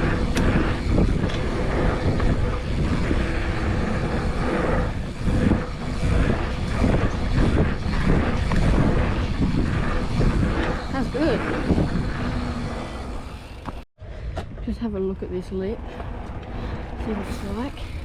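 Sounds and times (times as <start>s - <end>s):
bike rattle: 0.0s - 13.8s
wind buffeting microphone: 0.0s - 18.0s.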